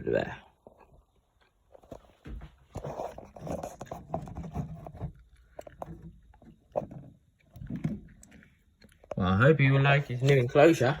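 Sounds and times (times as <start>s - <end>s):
handling rustling and scraping: 1.6s - 9.2s.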